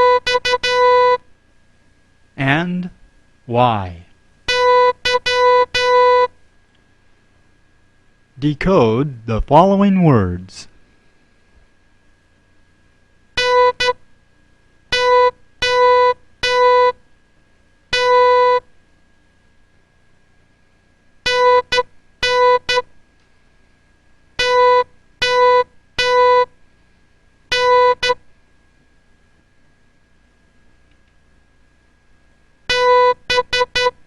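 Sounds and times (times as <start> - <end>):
morse code beeps: 0.0 - 1.2, 4.5 - 6.3, 13.4 - 14.0, 15.0 - 17.0, 18.0 - 18.6, 21.3 - 22.9, 24.4 - 26.5, 27.5 - 28.2, 32.7 - 34.0.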